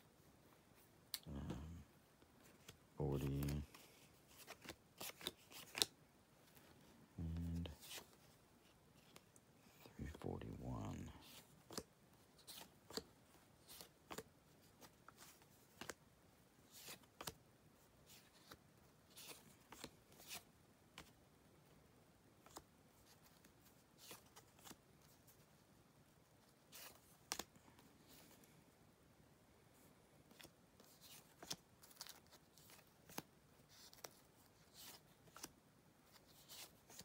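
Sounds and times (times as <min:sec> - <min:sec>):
cards tapping and rustling: 0:02.4 - 0:06.7, 0:30.2 - 0:37.0.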